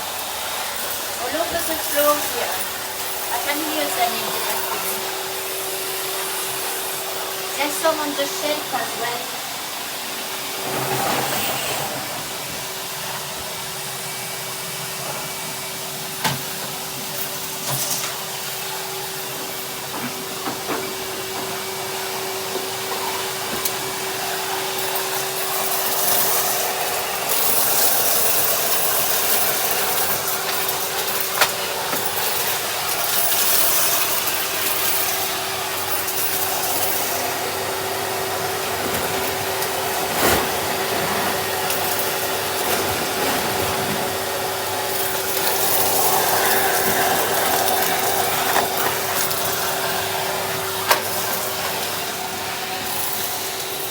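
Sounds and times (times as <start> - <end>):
vacuum cleaner running: 0.0 - 53.9.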